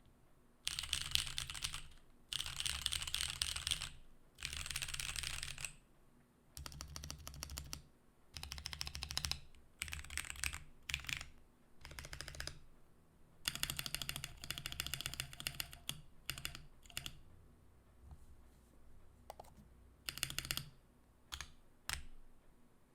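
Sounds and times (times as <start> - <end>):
typing on mechanical keyboard: 0.6 - 5.8, 6.6 - 7.8, 8.4 - 12.6, 13.5 - 17.2, 20.1 - 22.1.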